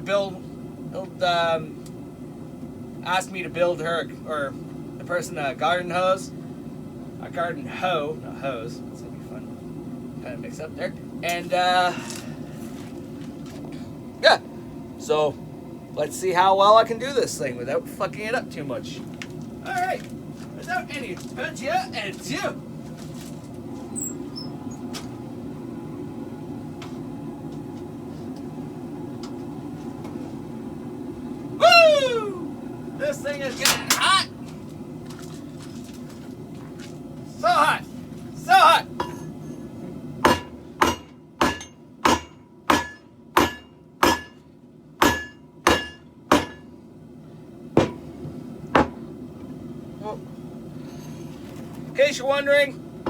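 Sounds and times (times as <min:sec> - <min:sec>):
hammer striking steel on anvil: 0:40.2 - 0:44.4, 0:45.0 - 0:46.7.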